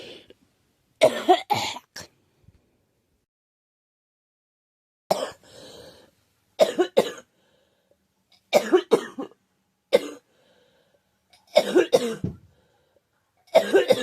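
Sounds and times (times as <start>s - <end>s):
girl coughing: 1.0s - 2.0s, 5.1s - 5.4s, 6.6s - 7.2s, 8.6s - 9.3s, 10.0s - 10.2s, 11.5s - 12.4s, 13.5s - 14.0s.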